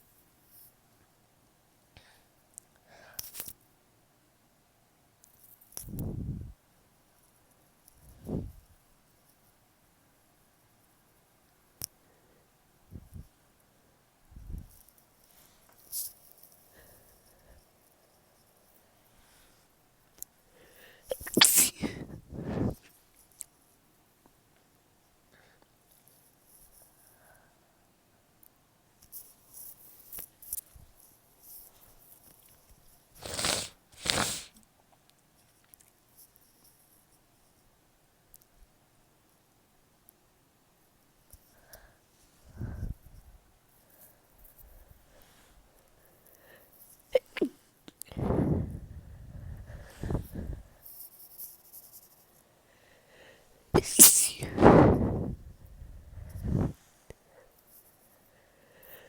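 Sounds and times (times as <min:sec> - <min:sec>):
small breathy sneezes: 0:20.7 - 0:22.8, 0:33.2 - 0:34.6, 0:47.1 - 0:48.5, 0:53.8 - 0:55.3
soft breathy sounds: 0:41.5 - 0:51.0, 0:52.5 - 0:59.0.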